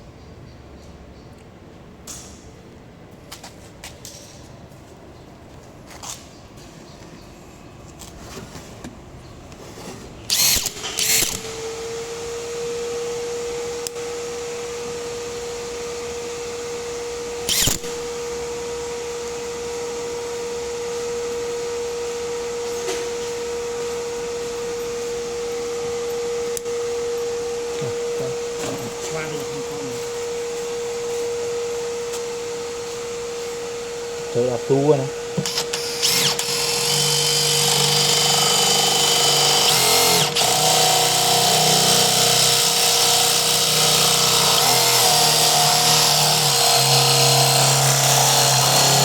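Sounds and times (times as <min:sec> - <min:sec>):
loud drill bursts: 0:10.3 - 0:20.3, 0:32.7 - 0:49.0
cordless drill whining: 0:10.3 - 0:49.0.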